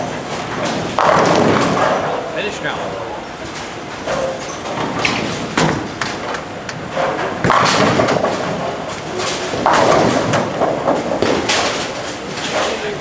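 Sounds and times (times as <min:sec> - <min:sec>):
bowling ball knocking: 0:00.0 - 0:02.3, 0:04.0 - 0:12.5
bowling pins crashing: 0:00.0 - 0:13.0.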